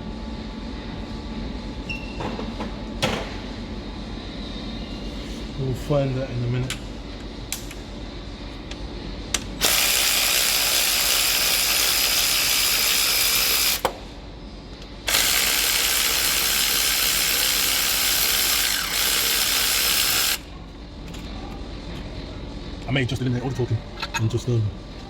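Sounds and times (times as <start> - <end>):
ratchet wrench whirring: 9.6 - 13.9, 15.0 - 20.5.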